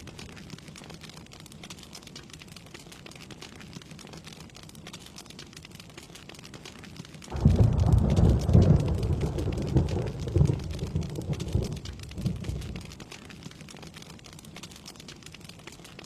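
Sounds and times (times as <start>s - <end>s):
steady rain: 0.0s - 16.0s
thunder rumbling: 7.3s - 13.0s.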